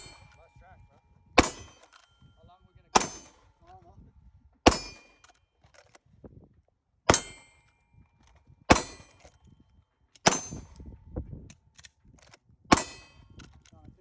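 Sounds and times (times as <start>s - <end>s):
steel target clanging: 0.0s - 0.5s, 1.4s - 2.2s, 2.9s - 3.5s, 4.7s - 5.3s, 7.1s - 7.7s, 8.7s - 9.3s, 10.2s - 10.8s, 12.7s - 13.4s
pistol shots: 1.4s - 2.0s, 3.0s - 3.5s, 4.7s - 5.2s, 8.7s - 9.2s, 10.3s - 10.6s, 12.7s - 13.2s.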